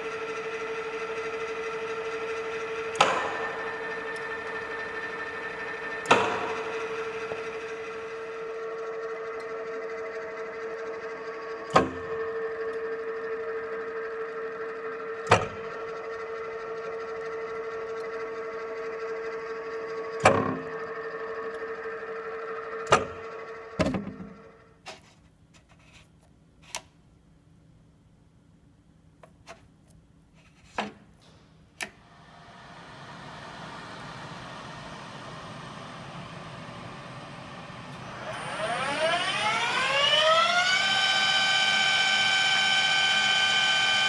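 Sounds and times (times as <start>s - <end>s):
pillar drill humming whine: 0.0s - 24.6s, 32.0s - 44.0s
sharp metallic clunks: 2.9s - 3.9s.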